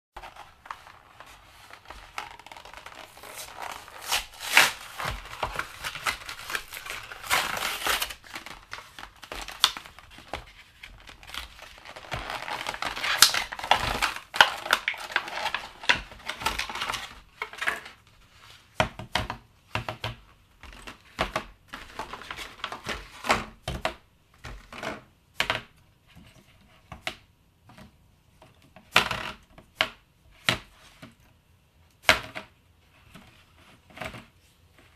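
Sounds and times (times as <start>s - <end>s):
hands crinkling plastic: 0.2s - 18.0s.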